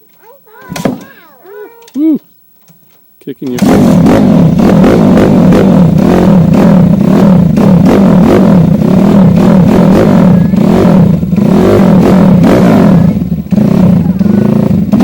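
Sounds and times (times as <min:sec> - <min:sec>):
motorbike engine revving: 0:03.4 - 0:15.0.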